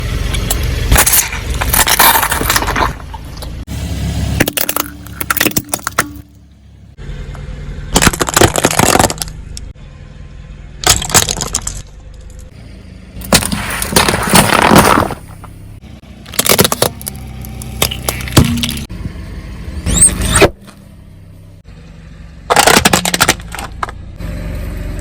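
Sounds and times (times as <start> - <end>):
car engine hum: 0.0 - 25.0
tyres crushing drink containers: 1.0 - 3.2, 8.0 - 9.4, 10.8 - 11.9, 13.2 - 15.5, 16.3 - 18.9, 22.5 - 23.9.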